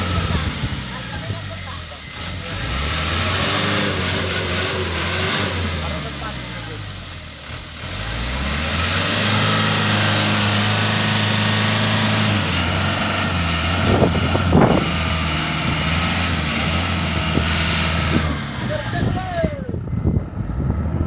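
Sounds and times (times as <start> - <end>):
truck diesel engine revving: 0.0 - 21.0.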